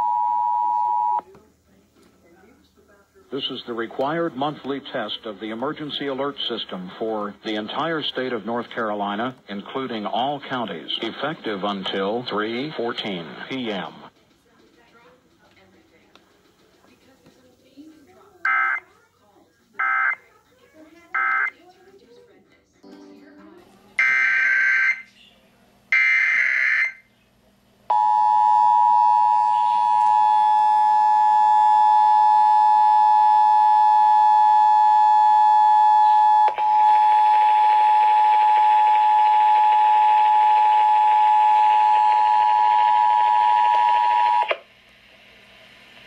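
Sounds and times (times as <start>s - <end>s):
two-tone alarm: 24.0s - 25.1s, 25.9s - 27.1s, 27.9s - 44.6s.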